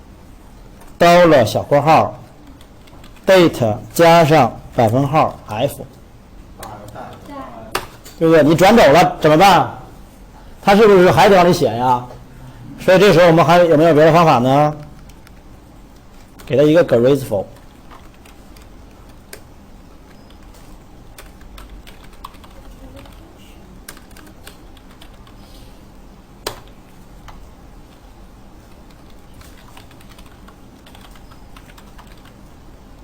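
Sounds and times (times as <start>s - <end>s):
faint steady hum: 0.0s - 33.0s
computer keyboard typing: 0.7s - 1.0s, 2.2s - 3.9s, 14.1s - 16.6s, 17.4s - 25.4s, 26.4s - 33.0s.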